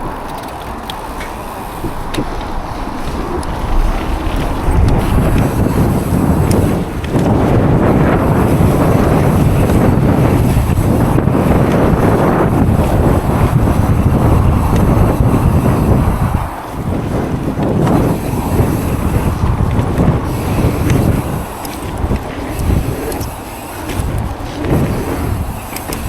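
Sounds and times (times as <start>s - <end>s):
wind buffeting microphone: 0.0s - 26.0s.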